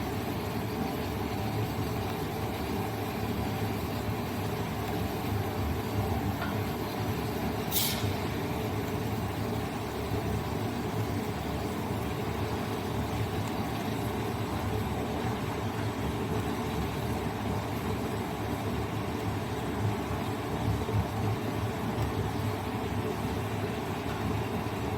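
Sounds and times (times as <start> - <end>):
constant hiss: 0.0 - 19.9
short sharp hiss: 7.6 - 8.4.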